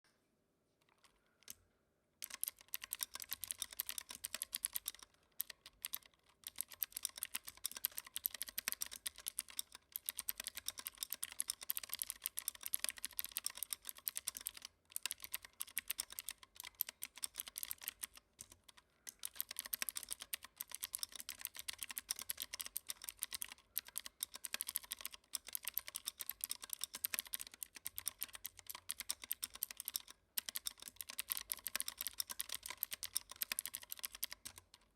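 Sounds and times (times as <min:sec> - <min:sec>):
fast typing on mechanical keyboard: 0:02.2 - 0:34.9.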